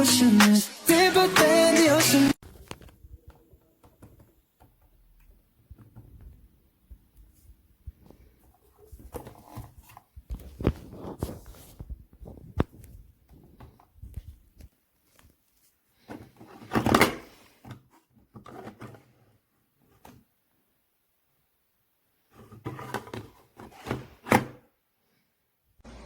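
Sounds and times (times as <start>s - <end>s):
rustling scrape: 7.3s - 14.4s.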